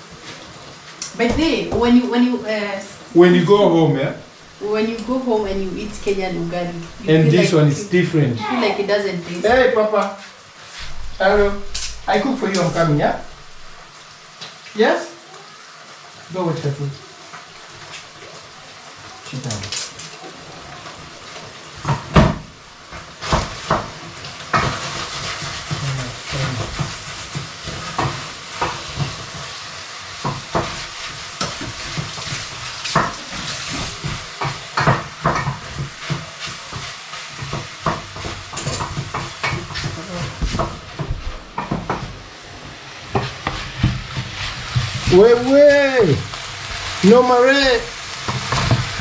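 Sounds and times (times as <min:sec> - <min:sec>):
food sizzling in a frying pan: 0:00.0 - 0:49.0
spoon knocking and scraping pan: 0:30.2 - 0:42.2.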